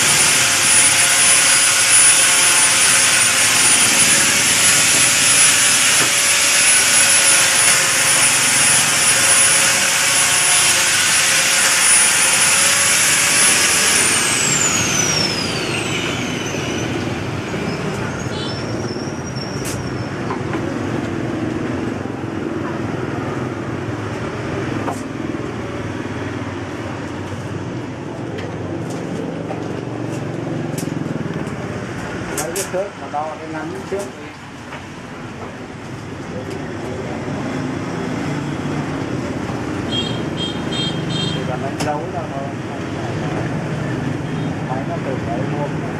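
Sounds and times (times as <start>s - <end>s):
power tool motor whining: 0.0s - 18.5s
workshop noise: 0.0s - 45.9s.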